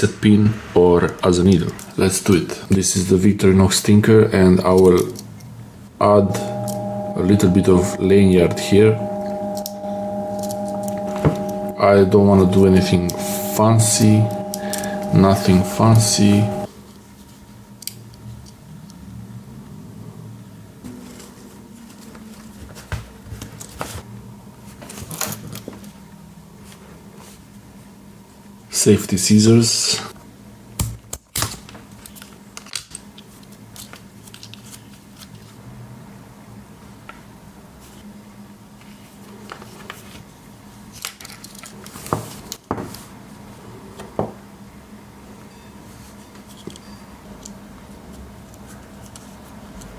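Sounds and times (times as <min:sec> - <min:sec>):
steady low hum: 0:06.0 - 0:16.7.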